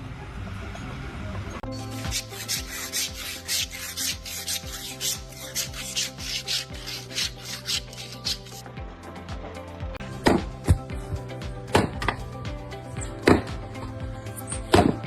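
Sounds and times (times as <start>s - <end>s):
background music: 0.0s - 15.0s
rasping scraping strokes: 1.6s - 8.7s.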